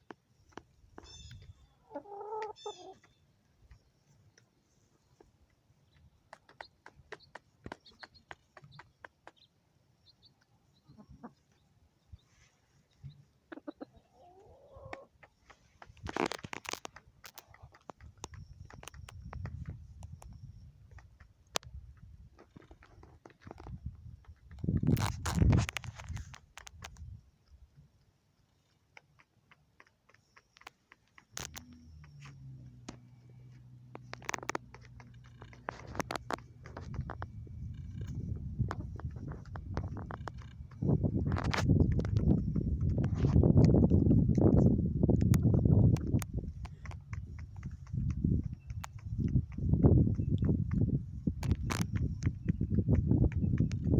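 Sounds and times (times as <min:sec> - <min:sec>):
chickens pecking at feed: 0:00.1 - 0:09.6, 0:13.0 - 0:53.9
chicken call: 0:01.1 - 0:03.1.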